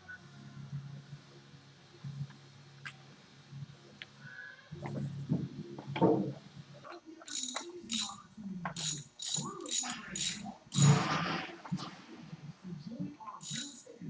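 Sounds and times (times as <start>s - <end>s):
ratchet wrench clicking: 7.3s - 11.1s, 13.4s - 13.9s.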